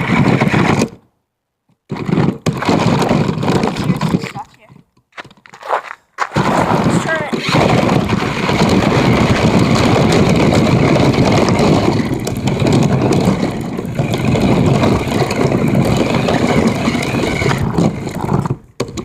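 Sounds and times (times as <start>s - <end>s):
rc car motor rumble: 1.9s - 4.2s, 6.4s - 19.0s.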